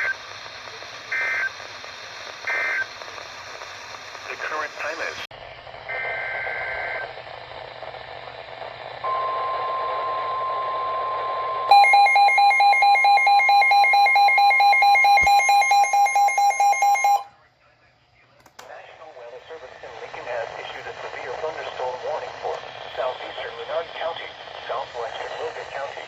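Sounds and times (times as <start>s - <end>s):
steady alarm tone: 11.6s - 17.3s
rapid beeping alarm: 11.7s - 17.3s.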